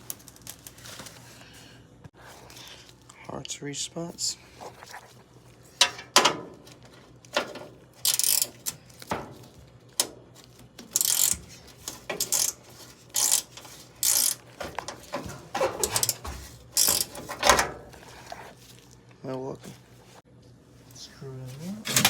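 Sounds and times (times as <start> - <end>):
hand ratchet clicking: 8.0 - 9.1, 10.8 - 17.6.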